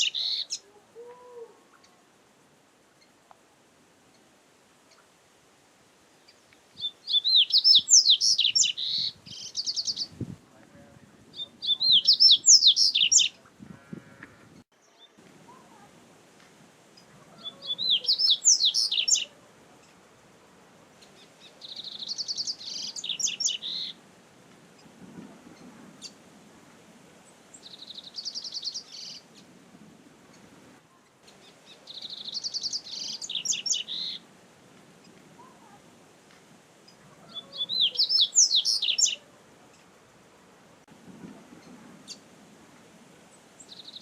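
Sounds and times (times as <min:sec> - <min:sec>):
bird singing high chirps: 0:00.0 - 0:00.6, 0:06.8 - 0:10.2, 0:11.3 - 0:13.4, 0:17.4 - 0:19.3, 0:21.1 - 0:24.0, 0:31.3 - 0:34.2, 0:37.3 - 0:39.2, 0:43.6 - 0:44.0.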